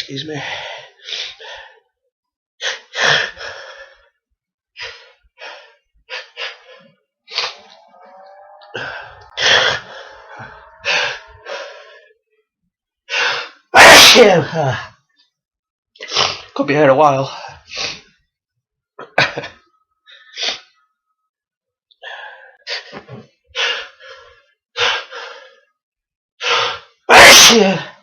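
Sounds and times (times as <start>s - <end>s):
man sneezing loudly: 13.8s - 14.8s, 27.1s - 28.0s.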